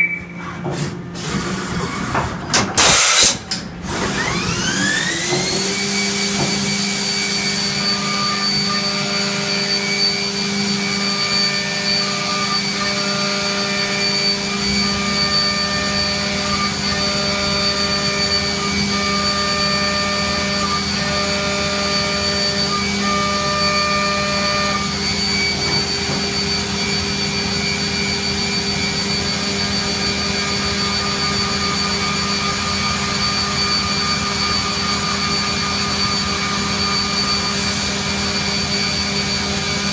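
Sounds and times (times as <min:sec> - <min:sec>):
tones switching on and off: 0:00.0 - 0:00.4
machine spindle whining: 0:03.9 - 0:39.9.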